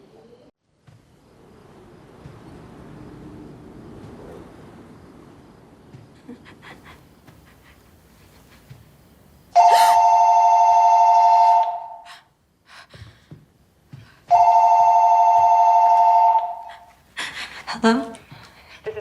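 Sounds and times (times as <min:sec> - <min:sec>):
telephone ringing two-tone trill: 0:09.6 - 0:12.0, 0:14.3 - 0:16.6.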